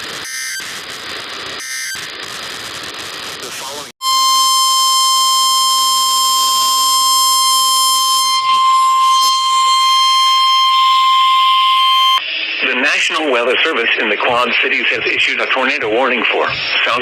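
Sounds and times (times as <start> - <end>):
steady alarm tone: 0.2 - 0.8, 1.6 - 2.2, 4.0 - 12.3.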